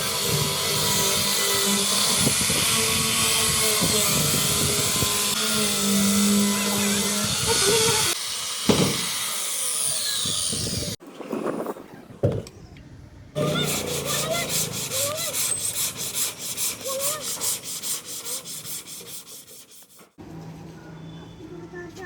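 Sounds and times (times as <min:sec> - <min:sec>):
power tool whining on wood: 0:00.0 - 0:11.0.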